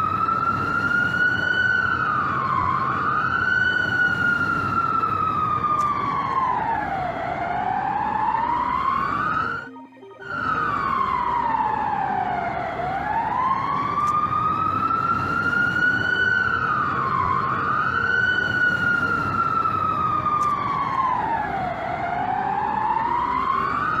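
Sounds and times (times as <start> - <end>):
alarm siren wailing: 0.0 - 24.0
steady background noise: 0.0 - 24.0.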